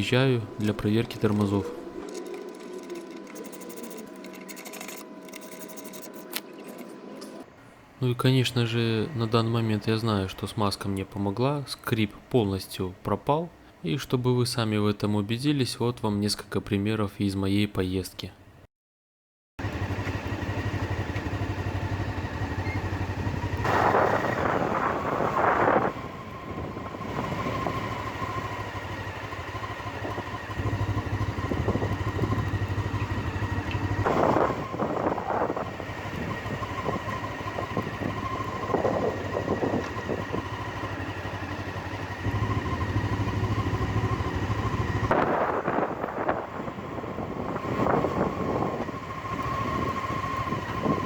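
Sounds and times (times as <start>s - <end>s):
motorcycle engine running: 19.6s - 51.0s.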